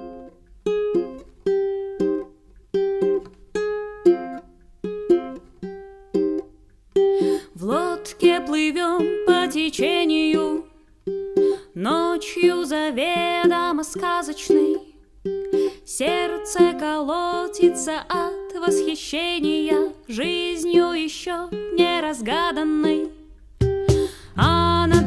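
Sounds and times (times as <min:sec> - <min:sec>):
ukulele picking chords: 0:00.0 - 0:25.0
woman singing: 0:07.2 - 0:10.8, 0:11.5 - 0:15.0, 0:15.6 - 0:25.0.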